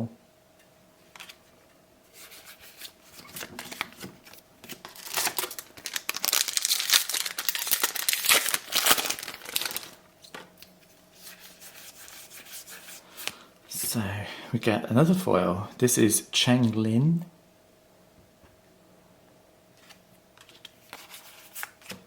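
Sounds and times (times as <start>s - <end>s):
wrapper tearing and crinkling: 3.1s - 10.0s
cards being handled: 19.8s - 22.0s.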